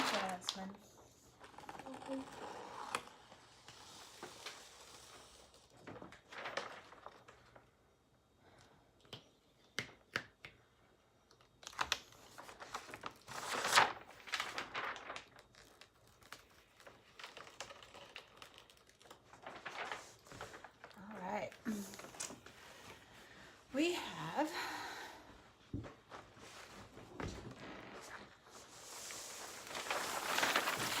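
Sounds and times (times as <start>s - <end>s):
paper wrapping crinkling: 3.8s - 7.7s, 11.4s - 22.5s, 27.4s - 31.0s.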